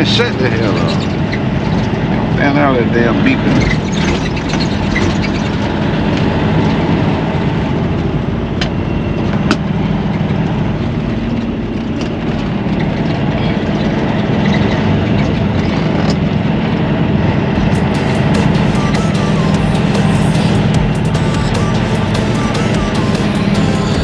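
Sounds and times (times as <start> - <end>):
diesel truck engine running: 17.4 - 24.0.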